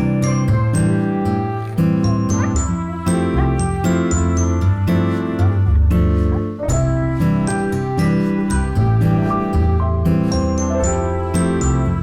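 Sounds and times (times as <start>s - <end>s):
gentle instrumental music: 0.0s - 12.0s
bell-like mallet notes: 2.1s - 5.7s
bass line: 2.1s - 8.0s.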